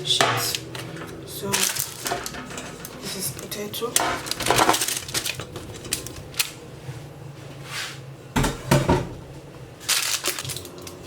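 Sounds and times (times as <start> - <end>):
potatoes knocking on metal tray: 0.1 - 5.7
cookware clatter: 0.1 - 6.2, 8.4 - 9.2.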